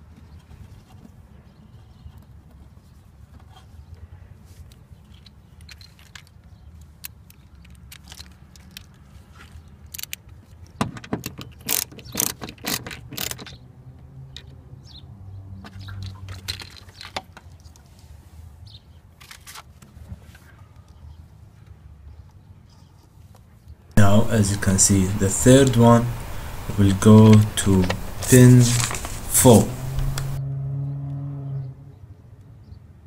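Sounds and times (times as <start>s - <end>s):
hand tools clicking and clinking: 9.9s - 13.6s.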